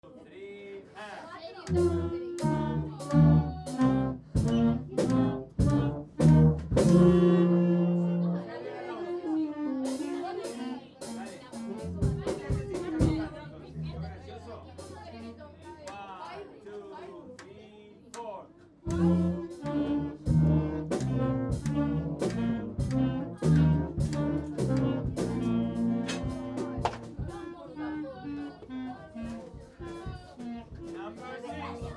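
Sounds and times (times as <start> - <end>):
school band playing short notes: 1.6 - 15.9, 18.8 - 31.9.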